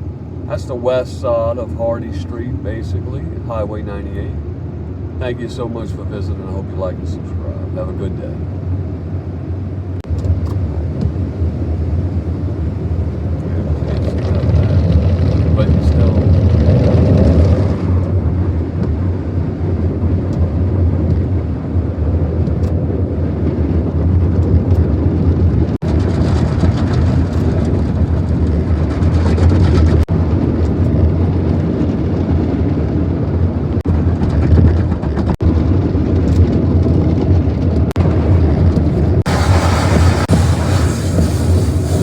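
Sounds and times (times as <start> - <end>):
car wash equipment rushing: 5.1 - 42.0.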